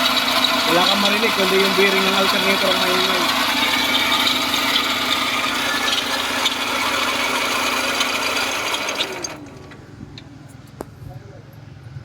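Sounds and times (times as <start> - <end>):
metallic bearing grinding: 0.0 - 9.4
engine running: 0.0 - 12.0.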